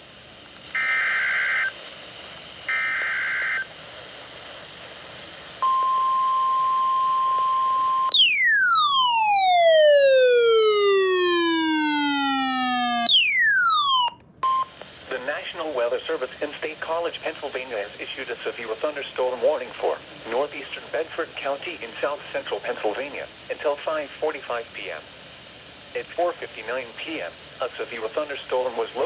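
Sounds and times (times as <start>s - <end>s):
falling electronic tone: 8.1s - 14.2s
steady warning tone: 8.1s - 14.2s.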